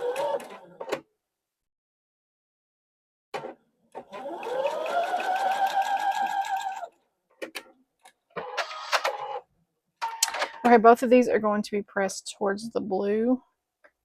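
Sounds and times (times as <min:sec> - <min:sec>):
sewing machine stitching: 0:00.0 - 0:01.0, 0:03.4 - 0:07.0.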